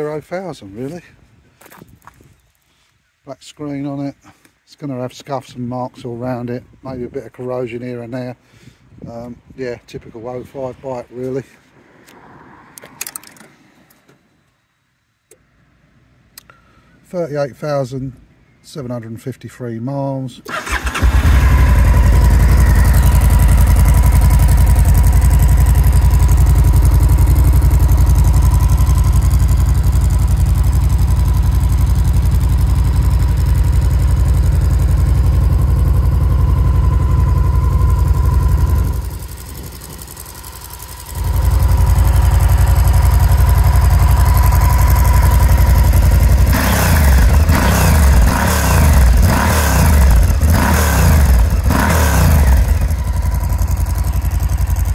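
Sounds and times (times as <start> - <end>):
motorcycle engine idling: 20.6 - 54.9.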